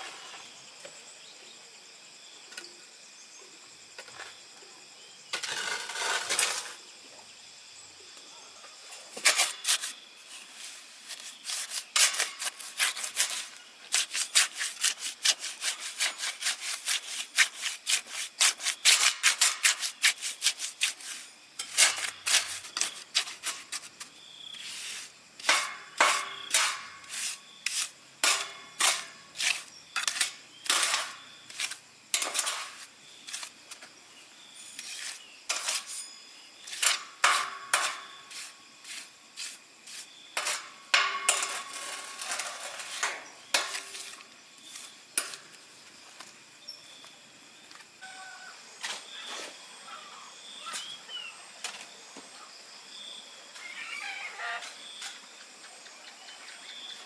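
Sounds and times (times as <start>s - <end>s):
sharp rasping hand strokes: 9.2s - 24.0s, 24.6s - 33.5s
birds chirping faintly: 41.6s - 57.0s.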